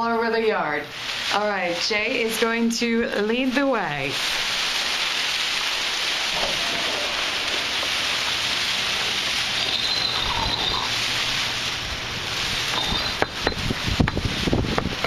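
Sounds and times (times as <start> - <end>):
heavy rain hiss: 0.0 - 15.0
wind gusts buffeting microphone: 12.4 - 15.0.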